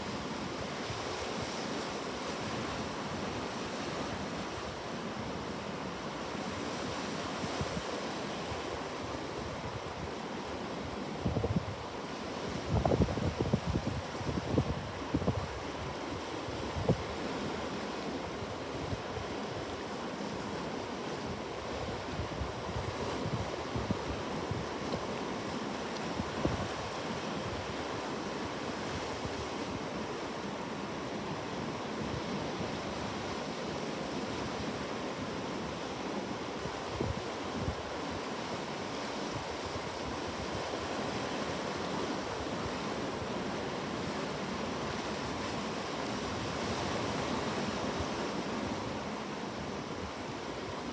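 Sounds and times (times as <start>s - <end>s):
waves washing onto shore: 0.0s - 50.9s
wind on microphone: 12.5s - 16.0s.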